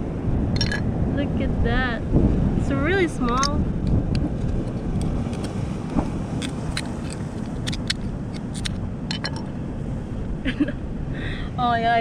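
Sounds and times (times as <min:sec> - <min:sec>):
low rumble: 0:00.0 - 0:11.2
rock crushing seashell: 0:00.6 - 0:00.9, 0:03.4 - 0:09.5.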